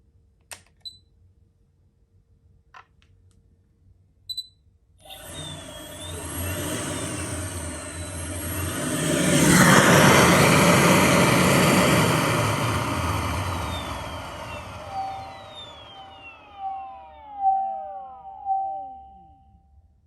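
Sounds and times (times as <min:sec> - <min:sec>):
rush of air: 0:05.1 - 0:16.8
electric compressor whine: 0:05.1 - 0:19.4.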